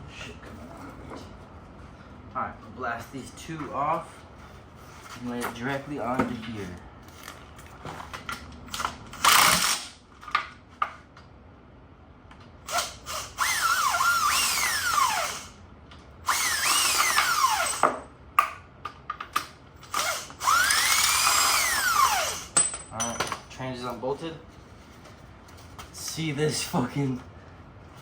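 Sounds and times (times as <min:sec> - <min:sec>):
cordless power tool whining: 0:12.7 - 0:15.6, 0:16.2 - 0:17.8, 0:19.9 - 0:22.5.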